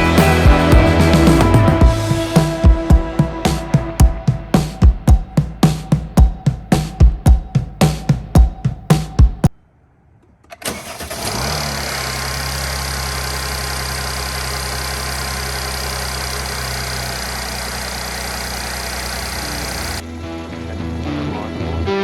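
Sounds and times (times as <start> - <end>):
car engine starting and idling: 0.0 - 2.6, 10.2 - 21.8
music: 0.0 - 9.5, 20.0 - 22.0.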